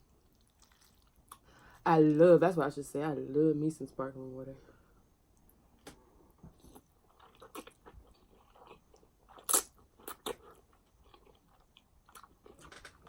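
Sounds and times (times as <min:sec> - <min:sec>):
chewing and mouth clicks: 0:00.0 - 0:01.5, 0:06.5 - 0:13.0.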